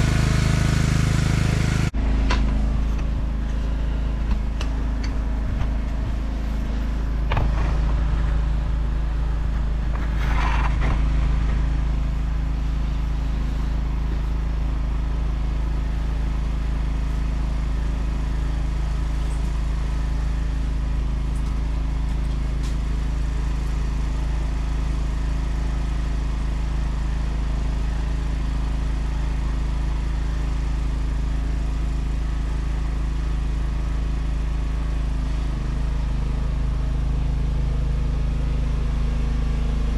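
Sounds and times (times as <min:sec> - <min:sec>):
lawn tractor engine running: 0:00.0 - 0:39.9
short scraping noise: 0:09.9 - 0:11.6.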